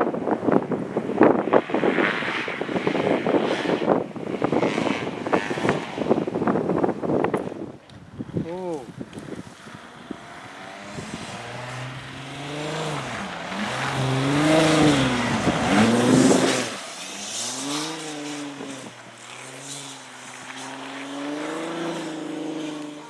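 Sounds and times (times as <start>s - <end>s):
race car engine revving: 9.1s - 23.0s.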